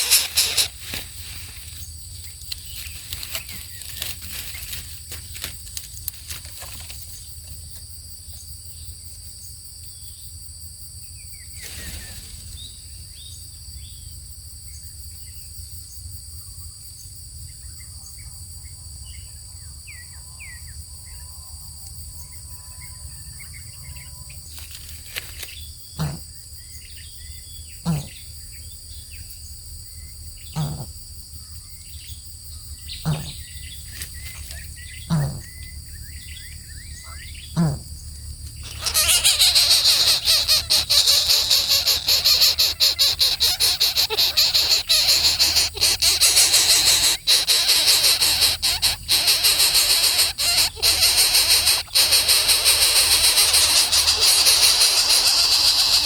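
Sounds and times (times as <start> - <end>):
birds chirping: 0.0 - 1.0, 26.8 - 29.3, 30.4 - 30.9, 31.9 - 56.0
insects droning: 0.0 - 56.0.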